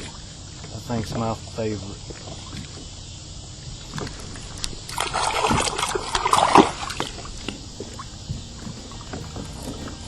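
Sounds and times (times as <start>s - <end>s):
water splashing and sloshing: 2.0s - 10.0s.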